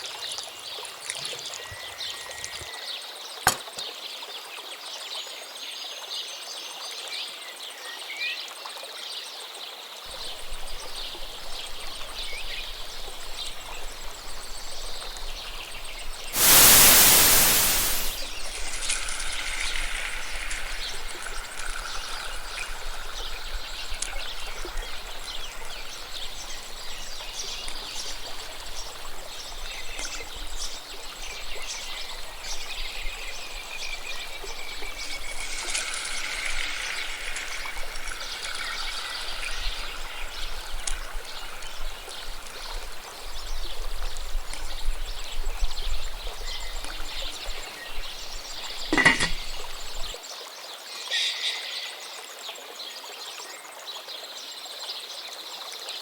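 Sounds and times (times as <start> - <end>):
food frying in hot oil: 10.1 - 50.2.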